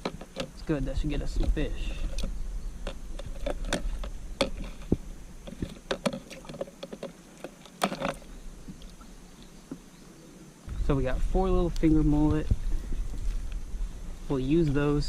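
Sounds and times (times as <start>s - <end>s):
gear knocking in a kayak: 0.0s - 8.8s
low rumble: 10.7s - 15.0s.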